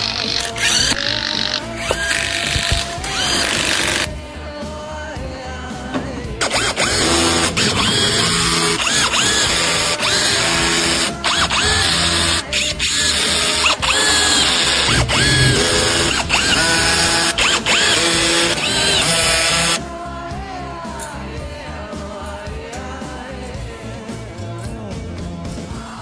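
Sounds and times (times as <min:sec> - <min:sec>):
steady beat with sharp clicks: 0:06.4 - 0:19.8.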